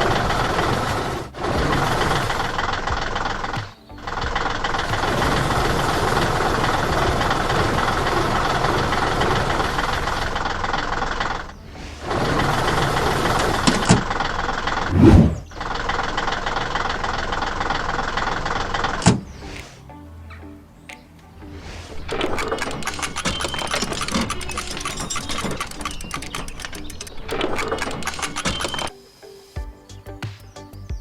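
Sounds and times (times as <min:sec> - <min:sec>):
heavy vehicle engine running: 0:00.0 - 0:19.1.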